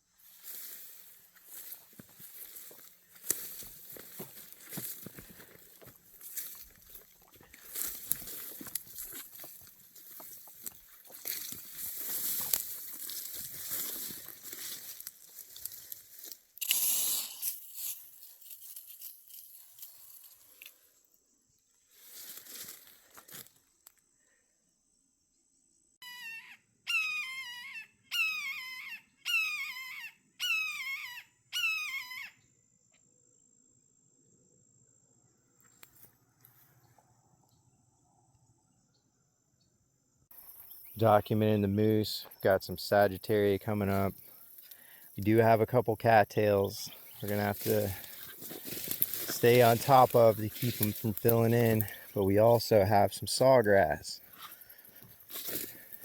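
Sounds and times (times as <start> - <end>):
crackling rustling noise: 0.2 - 20.8, 21.9 - 23.6, 46.7 - 52.8, 53.8 - 56.0
high insect trill: 0.2 - 26.0, 40.3 - 56.0
bird calling: 46.6 - 52.8.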